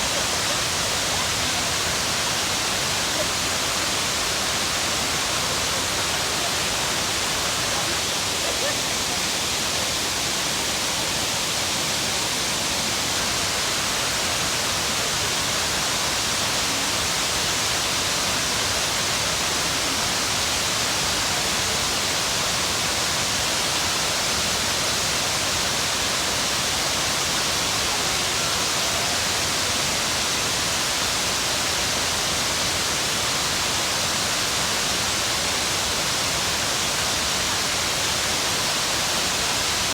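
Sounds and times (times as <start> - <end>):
waterfall pouring and splashing: 0.0 - 39.9.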